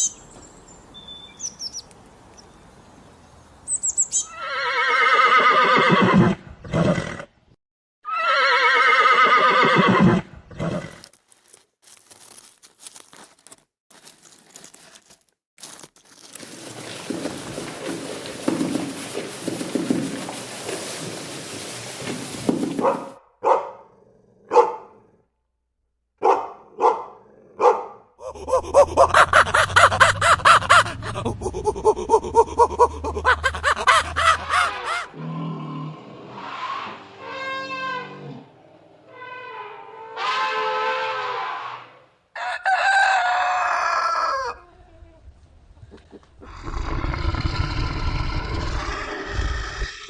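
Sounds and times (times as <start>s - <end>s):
dog barking: 22.8s - 25.1s, 26.2s - 28.1s
low rough sound: 28.2s - 35.1s
pitched animal call: 28.2s - 38.5s, 46.4s - 50.0s
rooster crowing: 42.3s - 44.7s.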